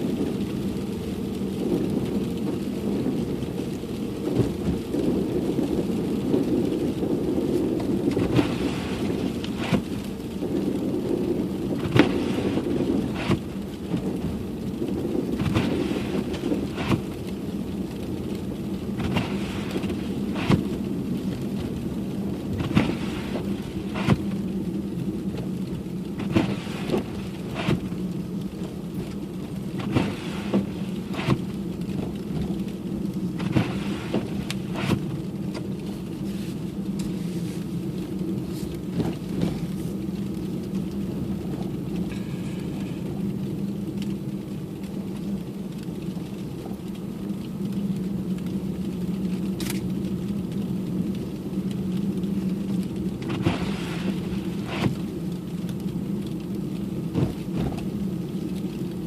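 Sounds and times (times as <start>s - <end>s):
engine and tyres rumbling: 0.0s - 59.0s.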